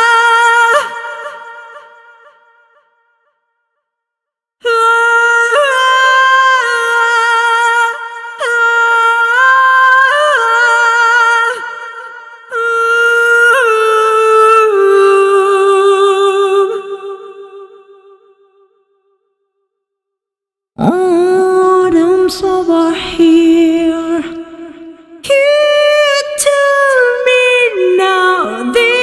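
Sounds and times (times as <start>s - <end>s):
woman singing wordless notes: 20.8s - 29.0s.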